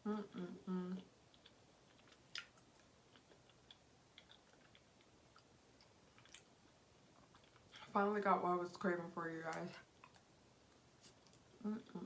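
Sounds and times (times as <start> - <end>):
faint chewing mouth clicks: 0.9 - 6.5, 9.5 - 12.0.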